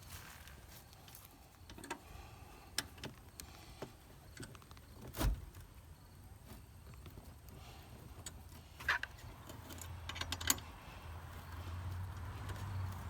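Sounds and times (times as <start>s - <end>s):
metallic clicks and knocks: 8.2s - 10.7s.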